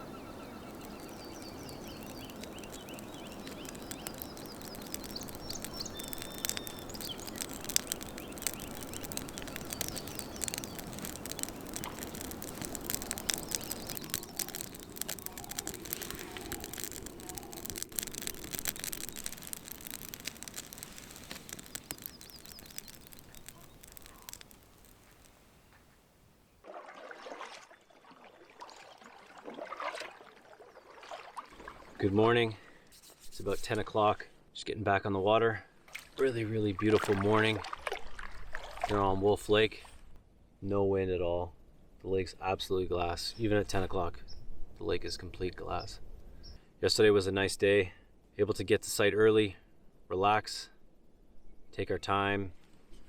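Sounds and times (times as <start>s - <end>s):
small clicks: 0.0s - 26.0s
birds chirping: 0.0s - 26.6s
water splashing: 0.0s - 32.0s.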